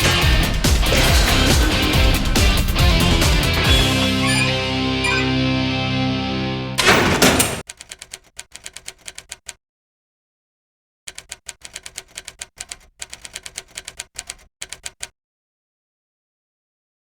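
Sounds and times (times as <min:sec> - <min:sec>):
rapid typing clicks: 0:07.6 - 0:09.6, 0:11.1 - 0:15.1.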